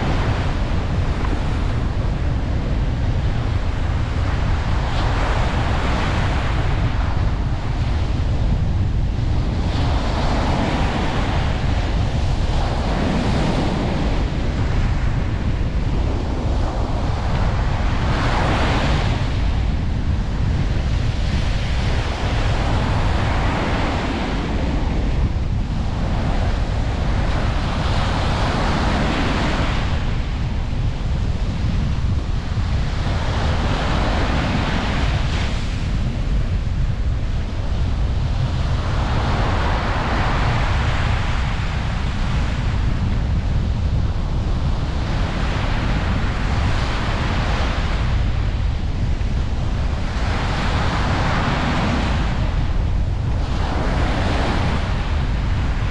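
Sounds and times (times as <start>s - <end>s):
ocean waves breaking: 0.0s - 55.9s
wind on microphone: 0.0s - 55.9s.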